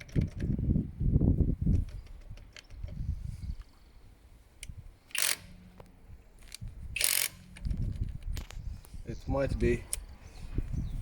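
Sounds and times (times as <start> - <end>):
cordless impact wrench running: 5.1 - 5.6, 7.0 - 7.7.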